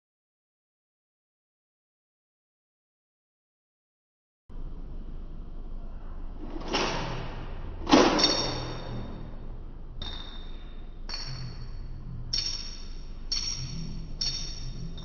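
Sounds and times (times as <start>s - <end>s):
bell-like pings: 10.0s - 15.0s.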